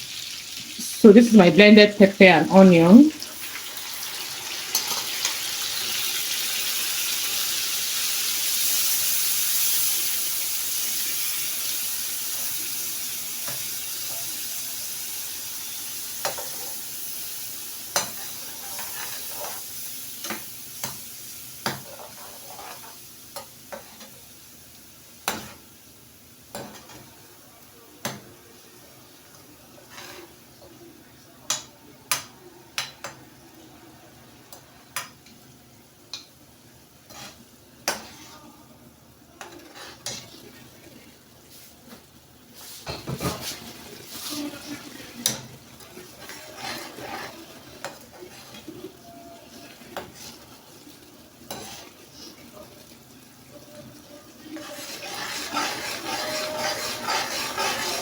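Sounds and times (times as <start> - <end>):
food sizzling in hot oil: 0.0 - 30.7, 34.3 - 38.5, 39.4 - 58.0
spoon scraping pot: 37.1 - 38.3, 39.4 - 40.4, 46.0 - 48.7, 51.5 - 52.0, 54.6 - 58.0.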